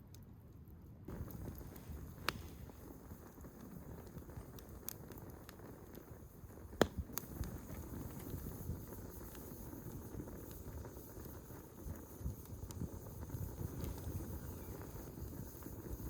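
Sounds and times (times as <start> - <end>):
log fire burning: 0.0 - 16.0
wood crackles and pops: 0.0 - 16.0.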